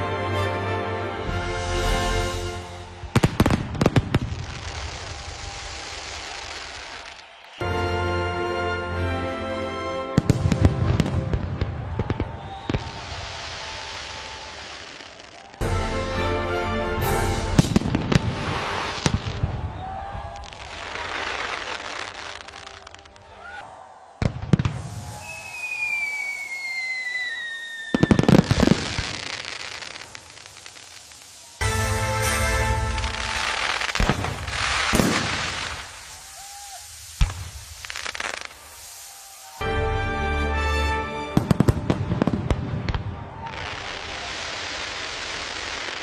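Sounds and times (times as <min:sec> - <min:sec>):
fireworks bangs: 0:01.2 - 0:07.6, 0:10.2 - 0:15.8, 0:17.0 - 0:46.0
firework whistle falling in pitch: 0:01.3 - 0:07.8, 0:10.2 - 0:15.8, 0:24.5 - 0:44.4
music with sustained tones: 0:07.6 - 0:10.2, 0:15.6 - 0:18.2, 0:31.6 - 0:33.8, 0:39.6 - 0:41.4
cracking bangs: 0:33.5 - 0:36.3.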